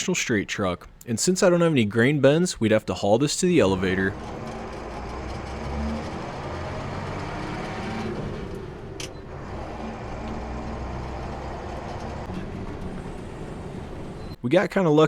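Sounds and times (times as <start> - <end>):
road noise: 3.6 - 14.4
truck engine droning: 3.6 - 14.4.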